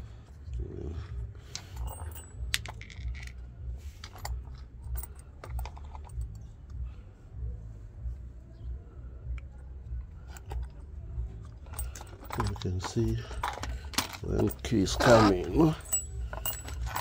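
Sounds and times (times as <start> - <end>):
plastic parts clicking and knocking: 11.7 - 15.1.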